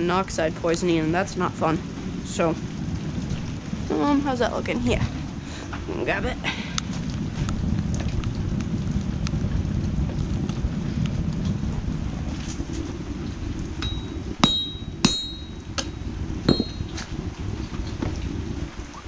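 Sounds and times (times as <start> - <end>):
low rumble: 0.0 - 19.0
hammer clanging on anvil: 13.8 - 15.9, 16.5 - 16.9.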